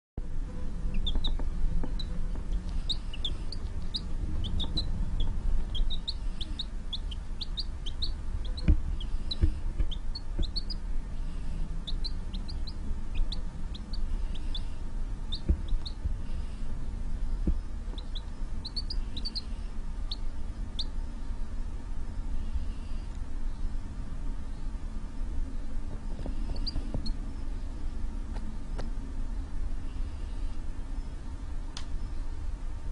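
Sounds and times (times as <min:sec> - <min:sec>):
low rumble: 0:00.2 - 0:21.6
chick cheeping: 0:00.8 - 0:10.8, 0:11.8 - 0:16.0, 0:18.0 - 0:19.5, 0:20.1 - 0:20.9, 0:26.4 - 0:27.2.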